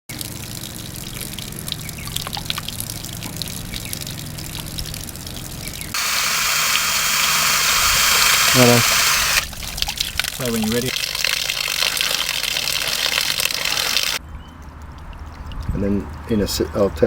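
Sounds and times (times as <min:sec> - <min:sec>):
water dripping and trickling: 0:00.1 - 0:07.6, 0:09.4 - 0:17.0
rushing water hiss: 0:06.0 - 0:09.5.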